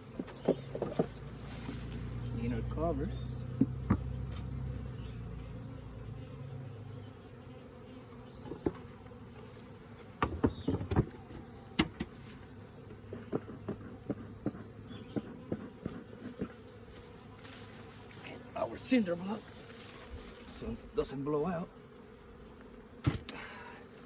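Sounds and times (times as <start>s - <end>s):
hive covers knocking: 0.0s - 1.8s, 3.5s - 4.5s, 10.1s - 12.2s, 12.8s - 16.7s, 23.0s - 23.5s
bees buzzing: 0.0s - 24.0s.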